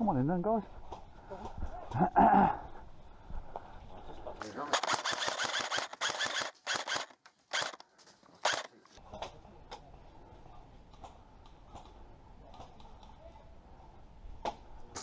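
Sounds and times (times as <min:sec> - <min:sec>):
airsoft guns firing: 0:04.4 - 0:07.8, 0:08.4 - 0:08.8.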